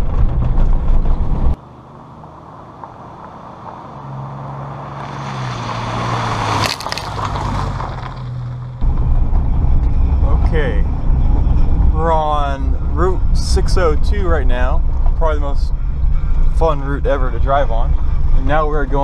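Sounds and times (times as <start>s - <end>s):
car engine hum: 0.0s - 19.0s
loud low rumble: 7.0s - 19.0s.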